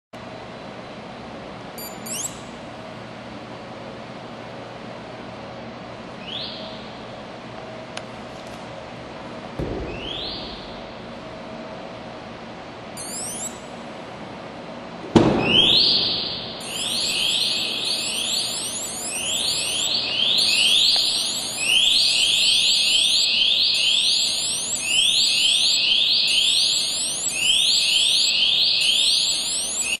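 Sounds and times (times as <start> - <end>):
sharp thump: 9.6 - 11.4
car alarm siren rising sweeps: 9.9 - 11.2, 13.0 - 13.6, 15.3 - 30.0.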